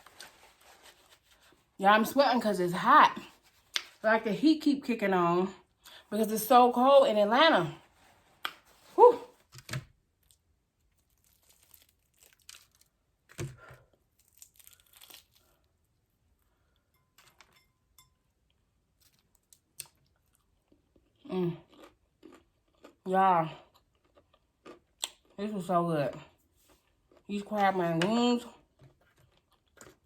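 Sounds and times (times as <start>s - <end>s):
short voiced sound: 8.9s - 9.4s
crunching crispy fried food: 10.2s - 15.9s, 19.0s - 25.4s.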